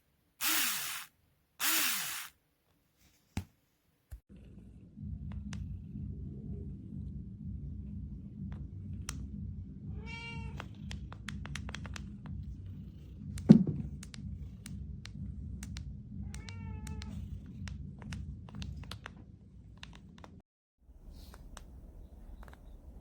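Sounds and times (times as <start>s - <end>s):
steady low hum: 4.3s - 23.0s
cat meowing: 9.9s - 10.7s, 16.2s - 17.2s
loud thump: 13.5s - 13.9s
small clicks: 21.3s - 23.0s.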